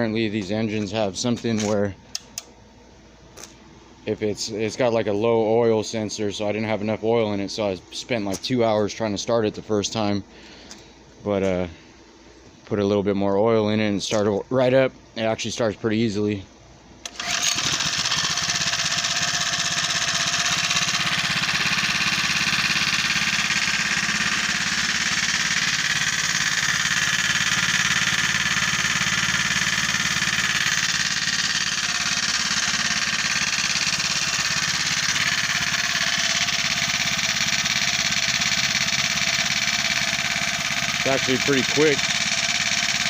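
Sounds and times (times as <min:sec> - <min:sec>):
small engine running: 0:17.0 - 0:43.0.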